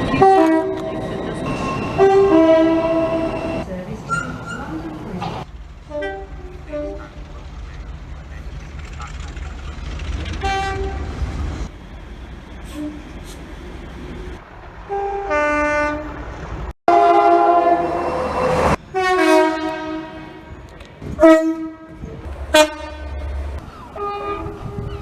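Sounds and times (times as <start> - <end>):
low rumble of trains: 0.0 - 25.0
train horn blasts: 0.1 - 4.6, 5.9 - 7.1, 10.4 - 11.2, 14.9 - 16.1, 16.9 - 20.6, 21.2 - 25.0.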